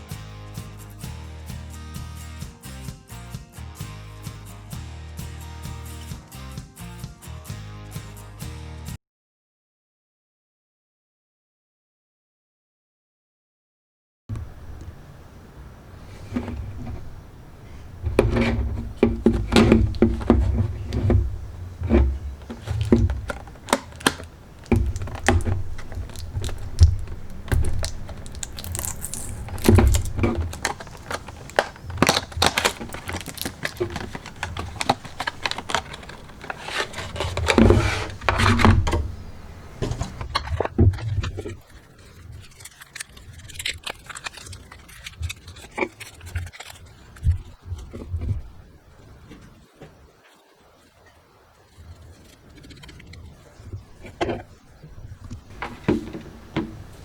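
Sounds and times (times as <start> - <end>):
box clicks and thunks: 14.3 - 41.6, 55.2 - 57.0
packaging rustling: 14.3 - 48.6, 52.2 - 57.0.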